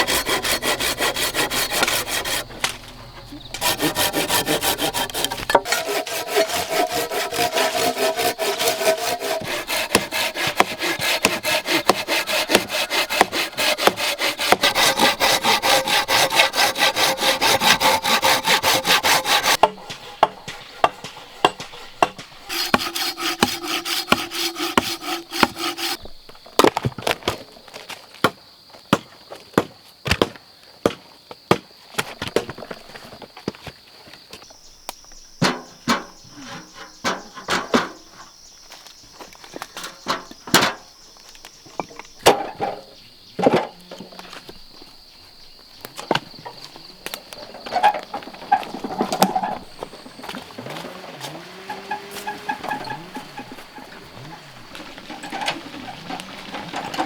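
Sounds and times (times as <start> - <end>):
rasping strokes on wood: 0.0 - 2.8, 3.5 - 26.0, 47.9 - 57.0
sharp taps and knocks: 19.4 - 26.0.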